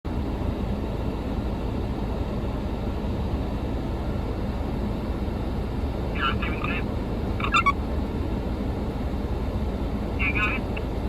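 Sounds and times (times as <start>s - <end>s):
excavator engine rumbling: 6.0s - 7.9s, 9.8s - 11.0s.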